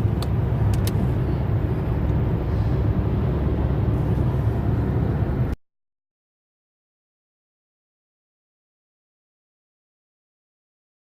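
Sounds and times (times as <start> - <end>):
car engine and road noise: 0.0 - 5.6.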